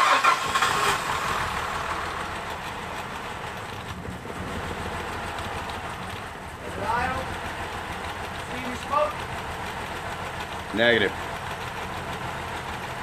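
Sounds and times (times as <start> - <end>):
car engine starting and idling: 0.0 - 13.0.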